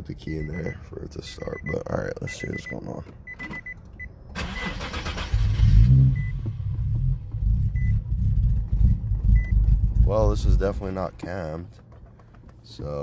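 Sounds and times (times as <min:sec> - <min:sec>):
high warning chime beeps: 0:01.4 - 0:04.2
car starter turning: 0:04.3 - 0:07.9
car engine running: 0:05.3 - 0:12.5.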